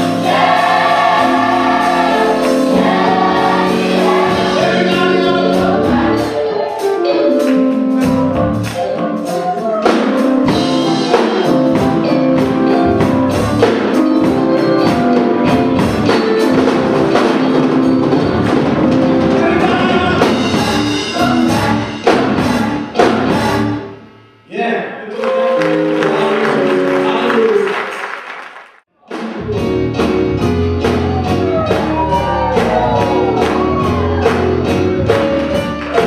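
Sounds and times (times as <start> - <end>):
choir singing gospel: 0.0 - 14.0, 14.8 - 24.0, 30.9 - 36.0
drums and cymbals: 9.1 - 24.5, 29.1 - 36.0.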